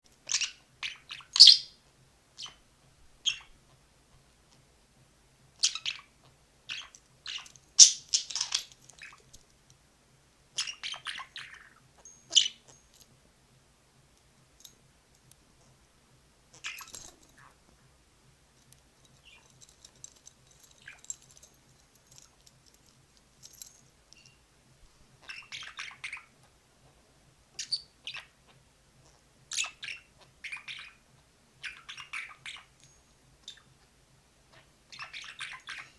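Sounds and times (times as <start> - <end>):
budgerigar chirping: 0.3 - 1.8, 2.4 - 2.6, 3.2 - 3.6, 5.6 - 6.1, 6.7 - 9.2, 10.6 - 12.8, 16.6 - 17.6, 25.2 - 26.4, 27.6 - 28.4, 29.5 - 31.0, 31.6 - 32.8, 34.5 - 35.9.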